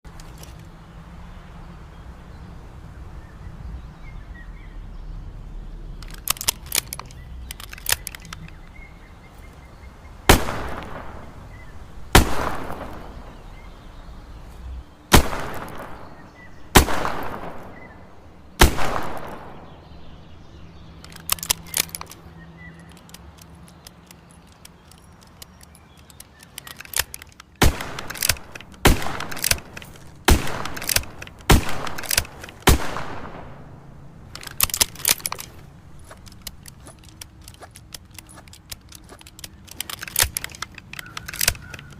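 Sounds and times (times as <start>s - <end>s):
metallic clicks: 6.0s - 8.9s, 20.8s - 41.9s.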